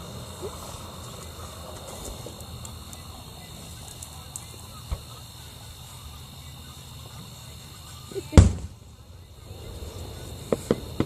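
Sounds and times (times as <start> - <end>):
crickets chirping: 0.0 - 11.0
loud firework bang: 8.3 - 8.8, 9.5 - 11.0.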